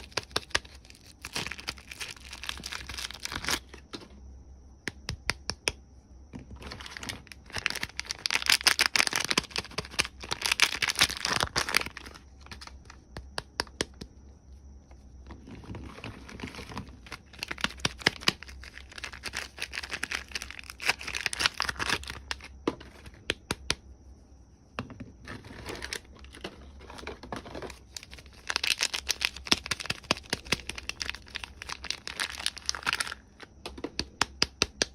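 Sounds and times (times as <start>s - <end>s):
wrapping crinkled and torn: 0.0s - 3.7s, 6.6s - 12.7s, 15.8s - 22.5s, 27.6s - 33.3s.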